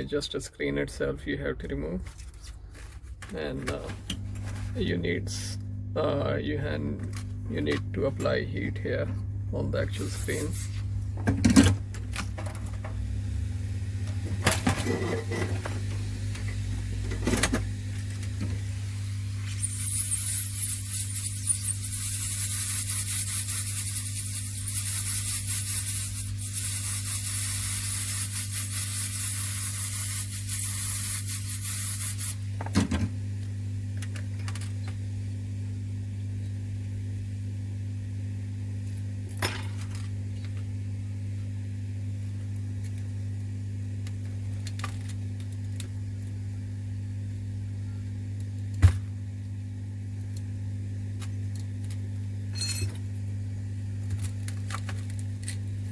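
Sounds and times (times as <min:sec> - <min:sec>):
low steady hum: 0:00.0 - 0:23.4, 0:32.3 - 0:55.9
hot-air gun hissing: 0:09.9 - 0:10.8, 0:18.5 - 0:32.5.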